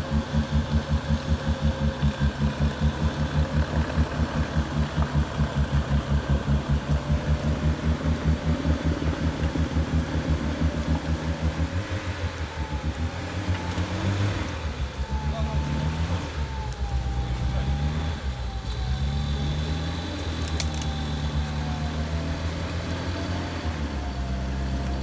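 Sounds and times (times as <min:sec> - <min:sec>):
off-road vehicle engine idling: 0:00.0 - 0:25.0.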